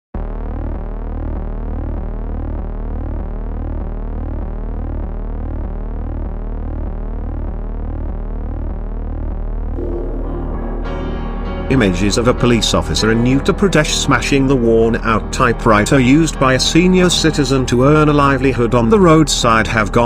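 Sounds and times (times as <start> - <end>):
low synth drone: 0.2 - 19.8
rising synth tone sweeps: 9.6 - 14.4.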